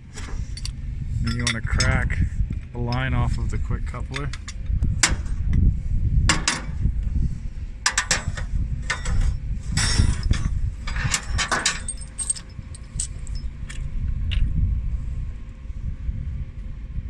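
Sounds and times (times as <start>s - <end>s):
low rumble: 0.0s - 17.0s
wrench clinking on steel fittings: 0.5s - 2.0s, 7.8s - 13.8s
metal scraping: 6.3s - 13.6s.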